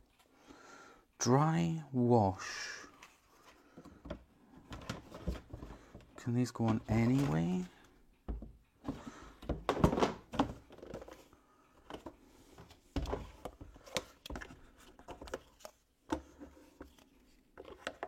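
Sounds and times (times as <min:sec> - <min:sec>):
plastic parts knocking and clicking: 0:03.8 - 0:17.0.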